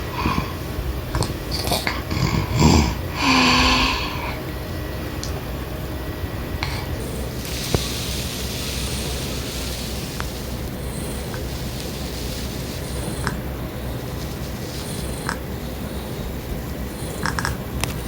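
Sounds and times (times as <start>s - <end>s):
baby snoring: 0.0s - 4.4s, 6.6s - 18.0s
steady background hiss: 0.0s - 18.0s.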